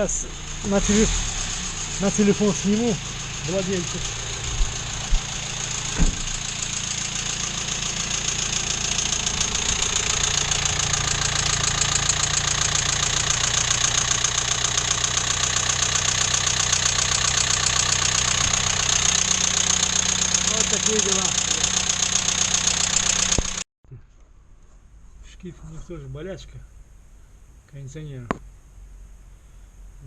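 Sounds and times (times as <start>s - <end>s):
car engine running: 0.0s - 23.6s
rhythmic engine knock: 0.0s - 23.6s
handling knocks: 4.6s - 6.3s.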